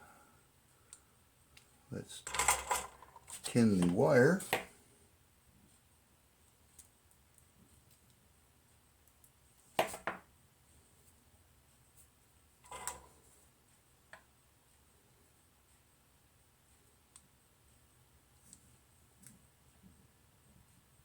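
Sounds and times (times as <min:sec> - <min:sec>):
small tools clattering on workbench: 0:02.2 - 0:03.4, 0:12.7 - 0:13.2.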